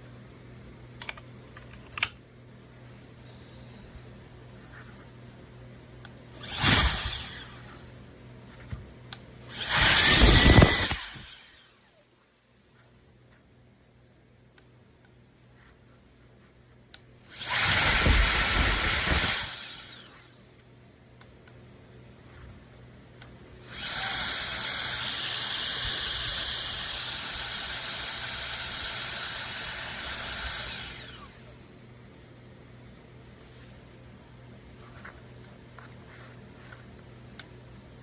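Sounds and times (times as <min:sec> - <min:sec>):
electric air duster motor whining: 0:06.4 - 0:07.8, 0:09.5 - 0:11.9, 0:17.4 - 0:20.3, 0:23.7 - 0:31.6.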